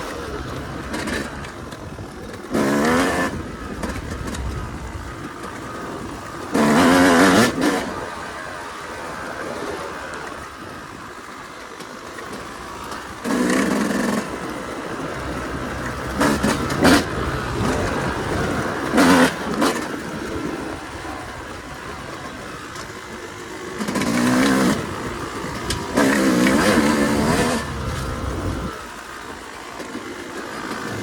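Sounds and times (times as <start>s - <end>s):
dirt bike engine revving: 0.0s - 8.3s, 13.1s - 29.2s.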